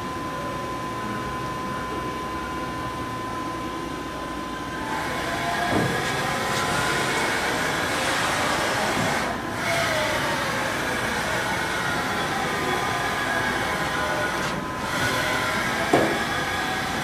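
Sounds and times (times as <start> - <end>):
machining center running: 0.0 - 17.0
falling drive whines: 4.7 - 17.0.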